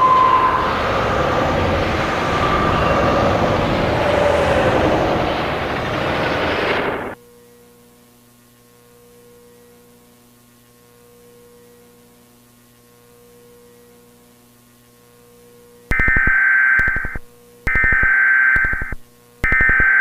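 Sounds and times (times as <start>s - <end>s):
low electrical hum: 0.0s - 20.0s
harsh buzzing data burst: 15.9s - 20.0s.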